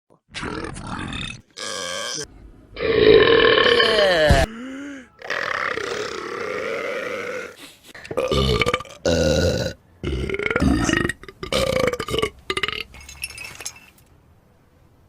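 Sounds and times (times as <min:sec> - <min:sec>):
cartoon character burping: 0:01.6 - 0:04.5, 0:05.2 - 0:12.9.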